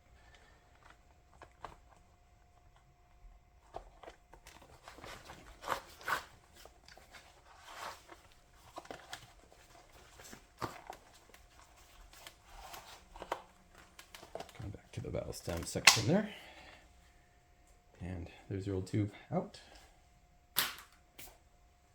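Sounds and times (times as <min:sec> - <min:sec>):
rubber rubbing and scuffing: 0:04.6 - 0:14.8.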